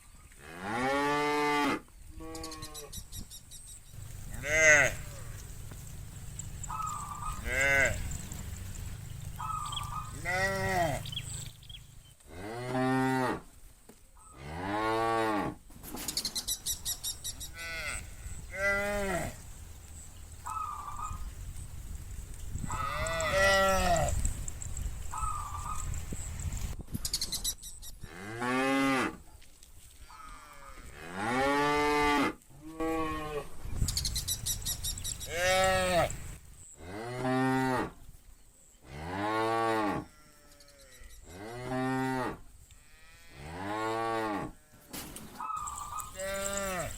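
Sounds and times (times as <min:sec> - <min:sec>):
cattle mooing: 0:04.0 - 0:13.4, 0:22.7 - 0:24.2, 0:35.3 - 0:37.9, 0:45.6 - 0:46.9.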